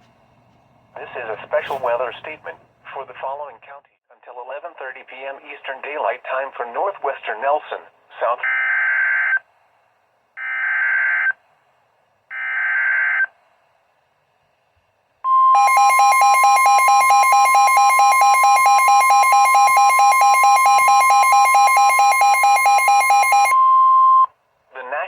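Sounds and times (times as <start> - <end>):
alert tone with pulsing buzz: 15.6 - 23.6.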